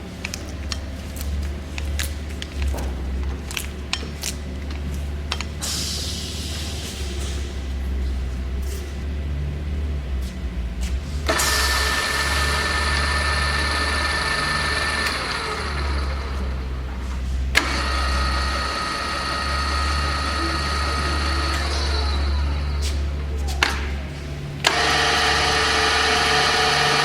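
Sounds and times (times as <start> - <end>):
drill press motor whining: 11.2 - 23.2, 24.6 - 27.0.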